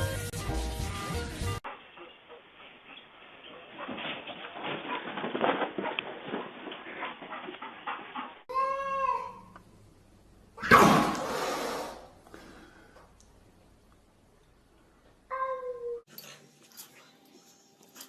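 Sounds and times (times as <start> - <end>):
sudden loud burst: 10.6 - 11.6.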